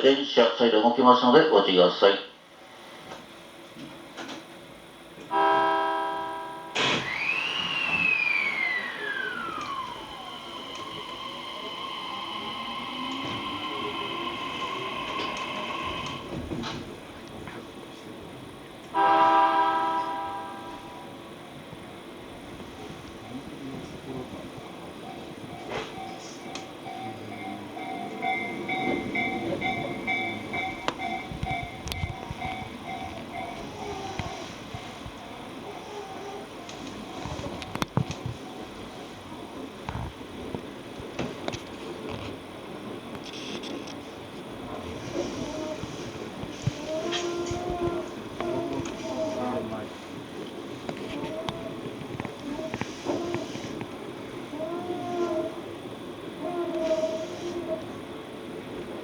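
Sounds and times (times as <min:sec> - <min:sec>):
train motor whine: 0:02.5 - 0:59.0
train clunk: 0:02.9 - 0:55.8
train horn blast: 0:05.3 - 0:06.8, 0:18.9 - 0:21.2
level-crossing warning bell: 0:05.3 - 0:21.6, 0:23.7 - 0:35.7.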